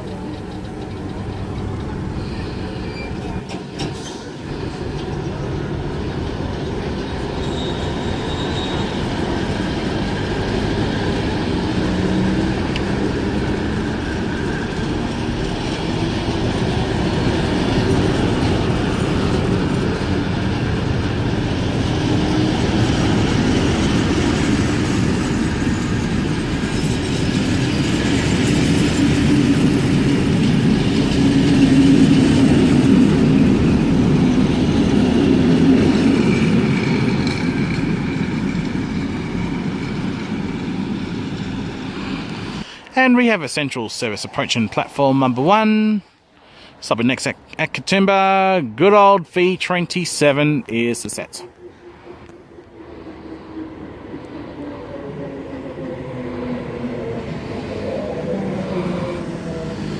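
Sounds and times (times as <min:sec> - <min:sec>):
train rumbling: 0:00.0 - 0:46.2, 0:47.3 - 0:59.9
faint wheel squeal: 0:00.2 - 0:04.8, 0:07.3 - 0:09.1.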